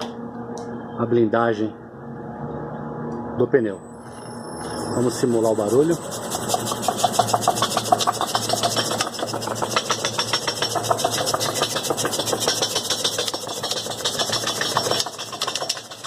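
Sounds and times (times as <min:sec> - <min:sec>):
shaker rig motor hum: 0:04.1 - 0:16.0
fast continuous rattle: 0:05.2 - 0:16.0.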